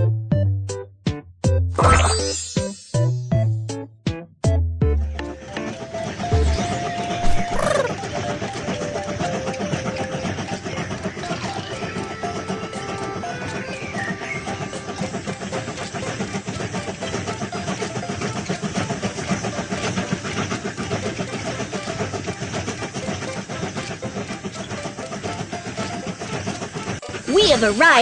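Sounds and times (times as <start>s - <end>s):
cartoon train clatter: 6.0s - 28.0s.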